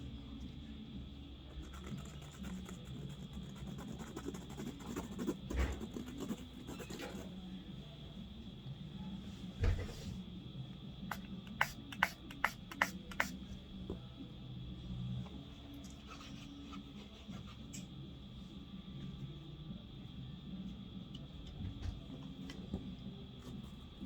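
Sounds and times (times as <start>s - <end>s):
faint high-pitched hum: 0.0s - 24.0s
soft thump: 9.6s - 10.0s.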